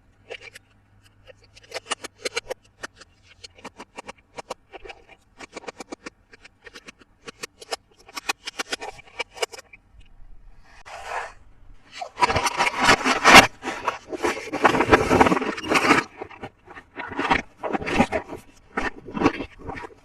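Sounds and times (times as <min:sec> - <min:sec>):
plastic toy parts clicking: 0:00.2 - 0:09.8
crinkly packaging scraping: 0:10.6 - 0:20.0.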